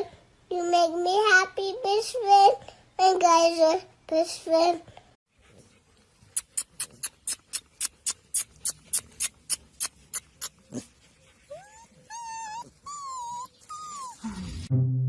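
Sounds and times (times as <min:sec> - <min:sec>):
dog whining: 0:06.5 - 0:14.6.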